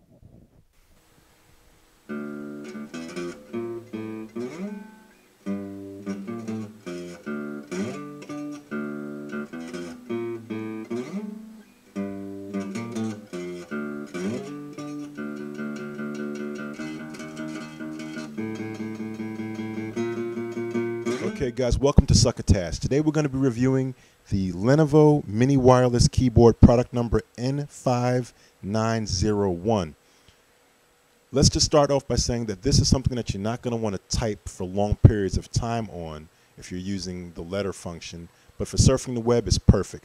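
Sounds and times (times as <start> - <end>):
acoustic guitar strumming: 2.1 - 23.2.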